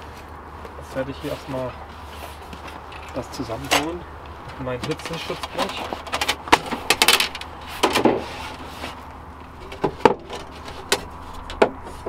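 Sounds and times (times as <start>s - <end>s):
sheet metal scrape: 7.2s - 9.0s.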